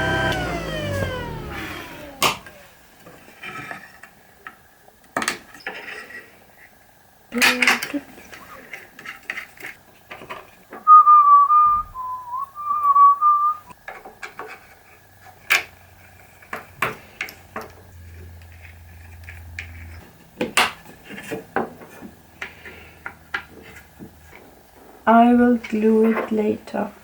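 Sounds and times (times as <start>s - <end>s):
person whistling a tune: 10.9s - 13.7s.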